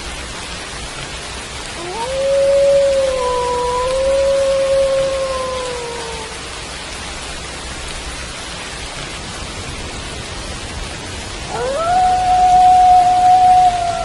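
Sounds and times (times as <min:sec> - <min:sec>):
steady rain falling: 0:00.0 - 0:14.0
wolf howling: 0:01.8 - 0:06.4, 0:11.5 - 0:14.0.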